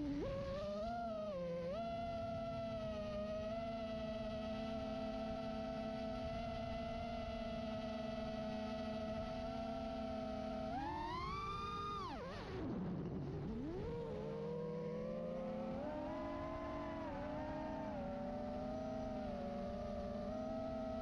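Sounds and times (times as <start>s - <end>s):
quadcopter motors whining: 13.6s - 21.0s.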